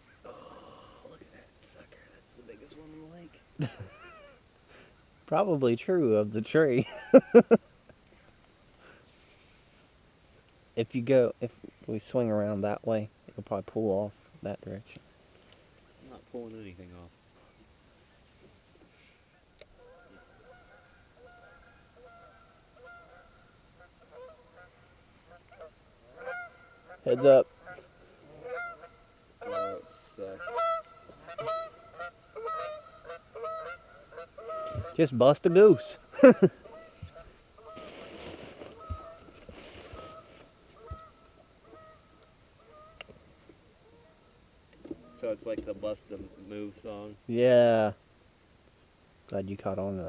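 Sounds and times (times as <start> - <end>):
soft hiss: 0.0 - 50.0
geese honking: 19.7 - 43.2, 44.9 - 45.5.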